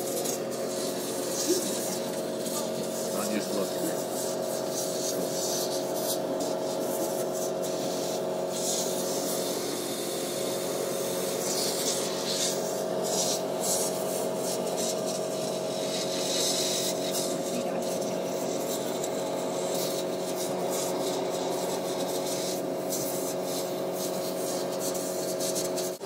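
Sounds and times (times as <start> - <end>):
compressed-air blower hissing: 0.0 - 26.0
steady machine hum: 0.0 - 26.0.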